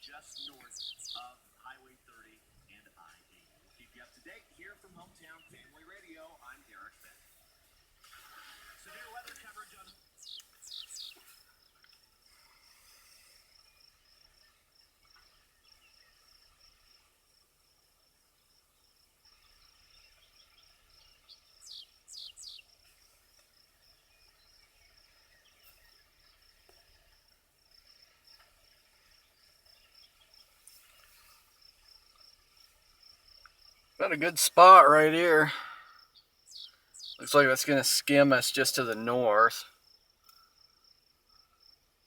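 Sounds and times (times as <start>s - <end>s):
bird chirps: 0.0s - 1.3s, 10.2s - 11.2s, 21.6s - 22.6s, 36.5s - 37.4s.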